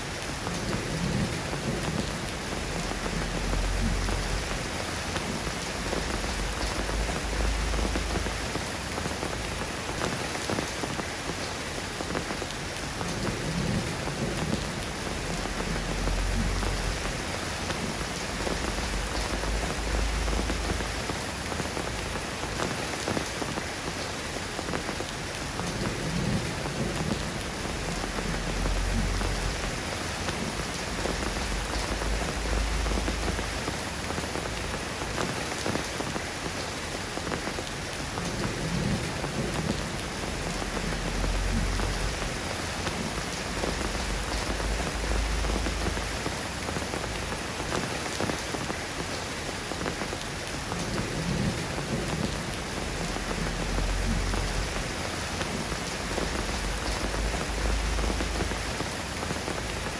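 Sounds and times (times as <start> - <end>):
soft rain falling: 0.0 - 59.9
deep low rumbles: 27.7 - 29.9, 39.6 - 42.6, 43.3 - 46.2, 52.8 - 58.7.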